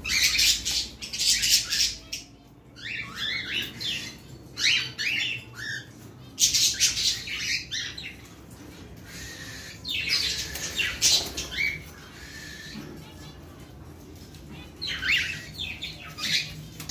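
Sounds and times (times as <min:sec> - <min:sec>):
cockatiels squawking: 0:14.6 - 0:16.9.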